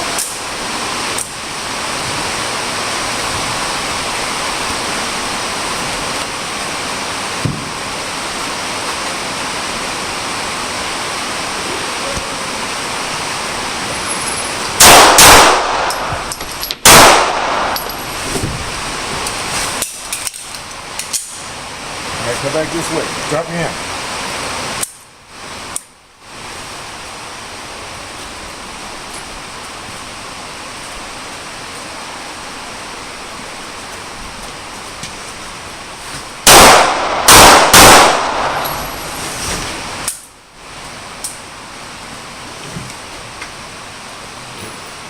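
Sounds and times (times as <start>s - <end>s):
steady background hiss: 0.0s - 45.0s
handgun shots: 14.8s - 18.0s, 36.5s - 38.9s.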